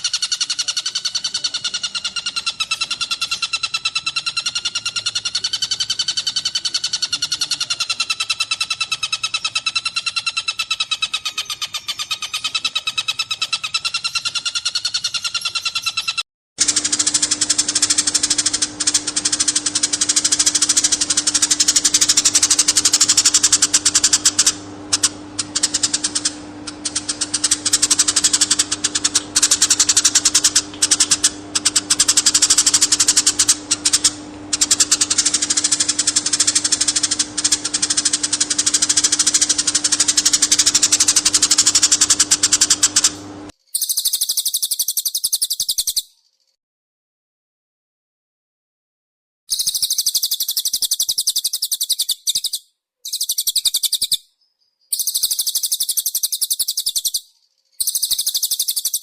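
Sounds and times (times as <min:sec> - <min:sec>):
songbird chirping and trilling: 0:00.0 - 0:16.2, 0:17.2 - 0:46.6, 0:49.5 - 0:59.0
high-pitched bird chatter: 0:00.0 - 0:46.6, 0:49.5 - 0:59.0
steady low hum: 0:16.6 - 0:43.5.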